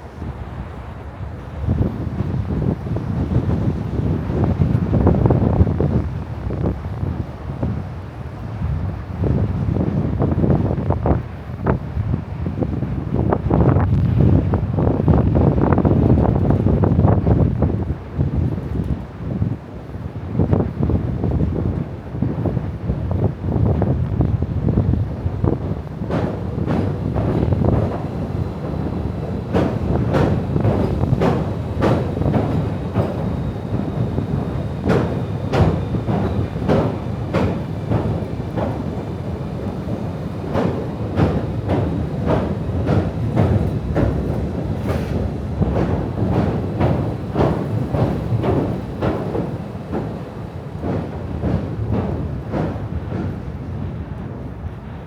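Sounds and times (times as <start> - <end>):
train rumbling past: 0.0 - 55.0
wheel clicks over rail joints: 25.8 - 53.4.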